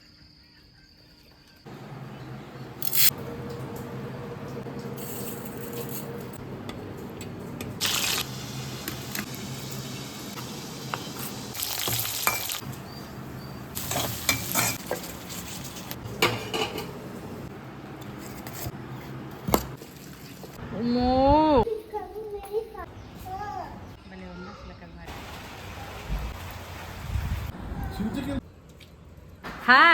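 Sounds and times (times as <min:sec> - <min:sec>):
food sizzling in a pan: 0:07.8 - 0:16.0.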